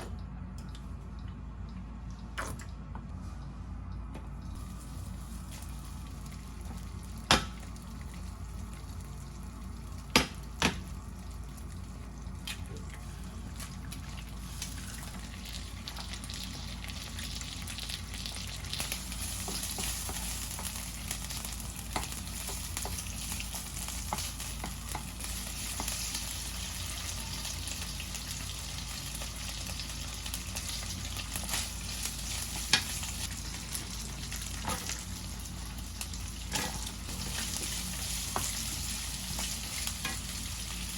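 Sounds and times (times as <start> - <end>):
food sizzling in a frying pan: 14.0 - 40.9.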